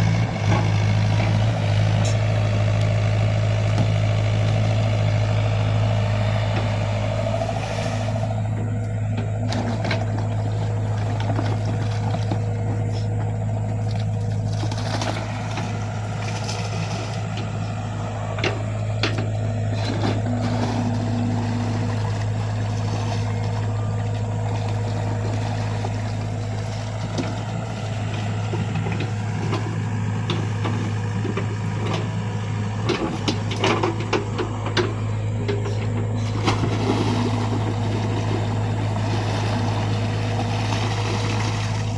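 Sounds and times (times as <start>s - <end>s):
excavator diesel engine running: 0.0s - 41.9s
digging knocks and scrapes: 18.4s - 21.9s.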